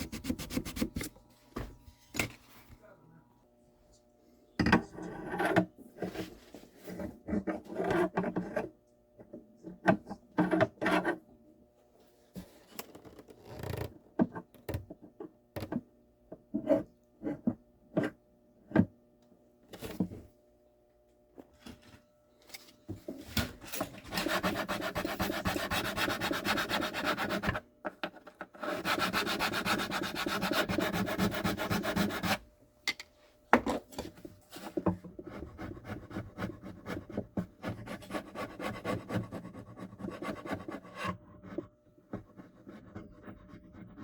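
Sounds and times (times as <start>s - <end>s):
scraping on wood: 23.8s - 27.6s.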